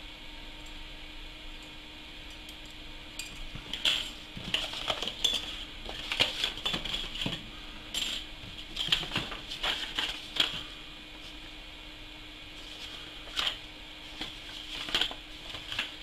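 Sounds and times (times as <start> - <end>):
plastic parts clicking and clattering: 3.7 - 7.4, 8.0 - 10.6.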